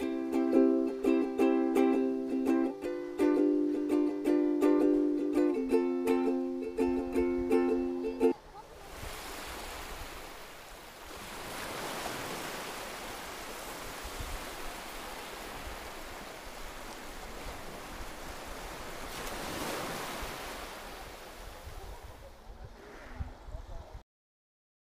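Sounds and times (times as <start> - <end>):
lake waves washing onto shore: 7.9 - 23.1.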